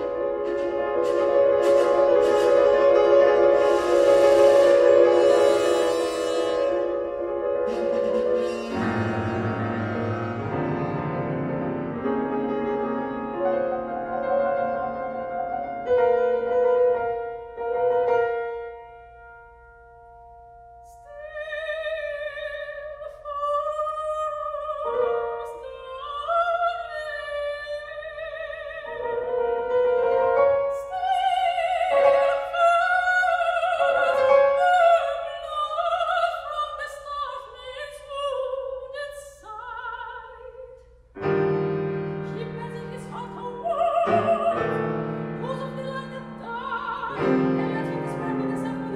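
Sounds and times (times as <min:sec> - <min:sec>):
piano chords: 0:00.0 - 0:23.0, 0:41.2 - 0:48.9
held horn note: 0:00.5 - 0:10.6
operatic soprano singing: 0:20.9 - 0:29.6, 0:30.6 - 0:40.8, 0:41.9 - 0:48.9.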